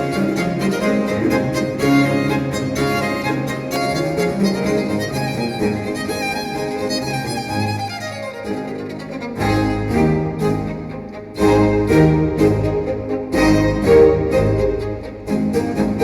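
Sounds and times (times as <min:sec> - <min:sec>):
bowed string music: 0:00.0 - 0:16.0.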